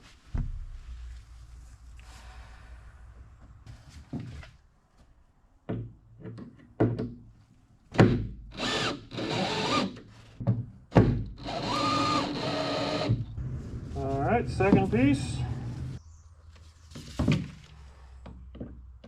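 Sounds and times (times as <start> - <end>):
power drill running: 8.5 - 10.0, 11.4 - 13.2.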